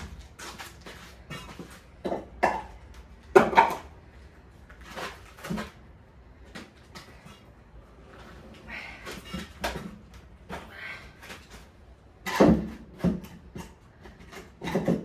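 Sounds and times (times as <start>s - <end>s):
timber beams knocking and scraping: 0.0s - 4.0s, 9.0s - 15.0s.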